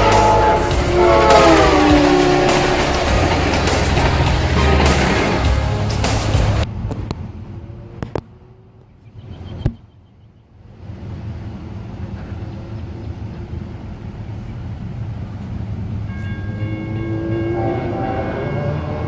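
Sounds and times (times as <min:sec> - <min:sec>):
locomotive horn: 0:00.0 - 0:06.6, 0:16.1 - 0:19.0
diesel locomotive rumble: 0:00.0 - 0:09.6, 0:10.6 - 0:19.0.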